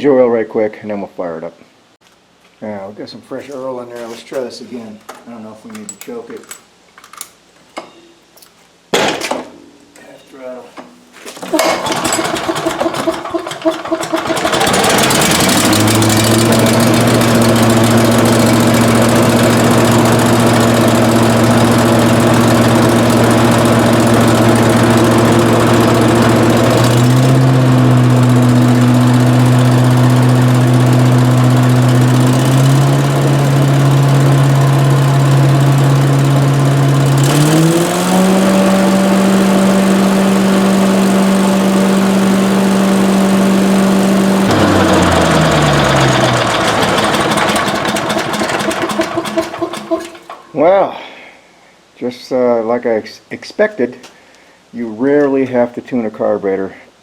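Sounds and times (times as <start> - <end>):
engine starting and running: 11.4 - 50.5.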